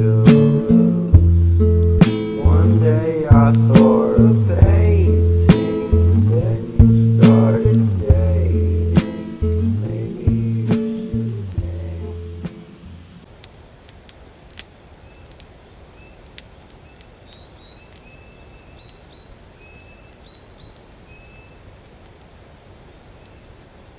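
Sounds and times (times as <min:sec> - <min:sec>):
birds chirping: 0:00.0 - 0:13.3, 0:16.8 - 0:21.8
campfire popping and crackling: 0:00.0 - 0:14.7
low background hiss: 0:00.0 - 0:23.9.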